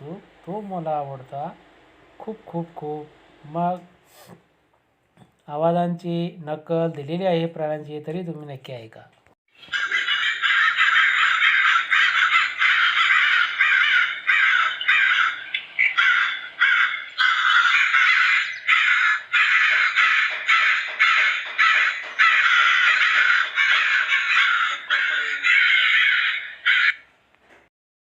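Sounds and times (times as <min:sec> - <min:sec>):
crows cawing: 0:09.7 - 0:27.1.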